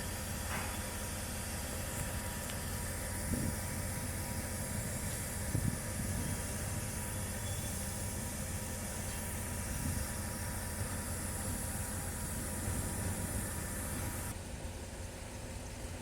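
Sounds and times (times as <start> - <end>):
faint steady whine: 0.0 - 16.0
heavy machinery engine rumble: 0.0 - 16.0.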